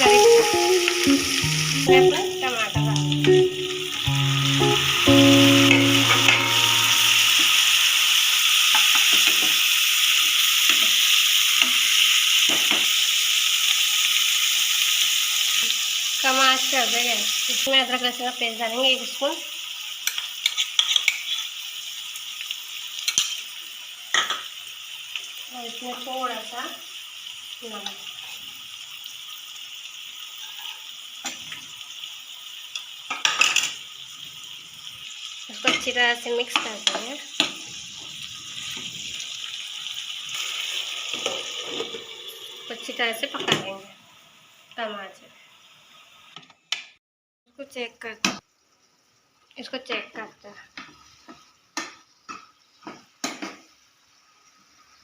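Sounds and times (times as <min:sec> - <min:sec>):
background music: 0:00.0 - 0:07.8
food sizzling in a pan: 0:00.0 - 0:55.0
spoon scraping against pan: 0:20.1 - 0:21.6.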